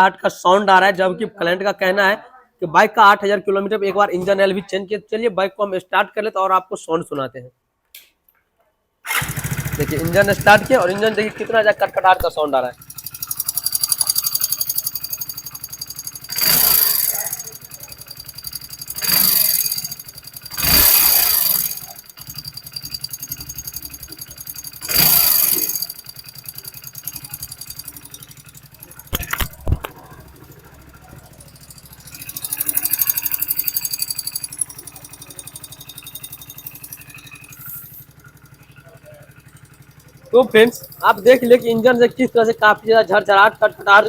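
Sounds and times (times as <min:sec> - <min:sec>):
motorcycle engine revving with rattle: 0:09.1 - 0:44.0.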